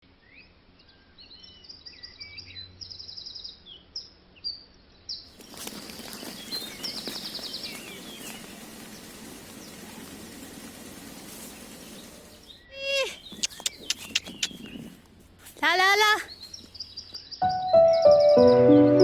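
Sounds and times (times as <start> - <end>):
small birds chirping: 1.2 - 18.8
steady outdoor hiss: 4.2 - 19.0
buzzy bird trills: 5.4 - 15.0.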